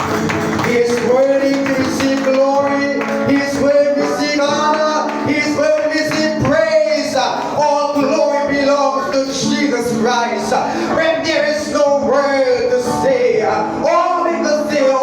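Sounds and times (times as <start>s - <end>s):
church worship music: 0.0s - 15.0s.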